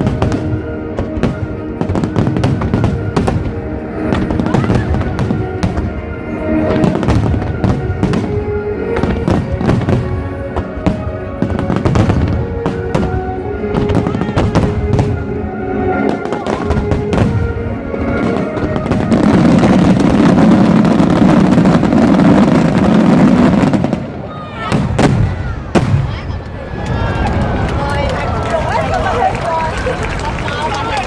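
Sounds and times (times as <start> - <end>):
music with held notes: 0.0 - 23.8
fireworks bursting: 0.0 - 31.0.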